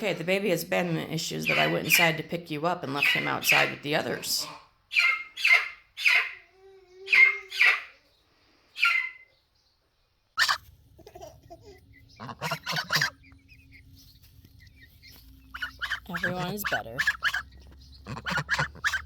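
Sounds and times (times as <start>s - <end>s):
poultry calling: 0.8s - 9.4s, 10.4s - 19.0s
low steady hum: 10.6s - 19.0s.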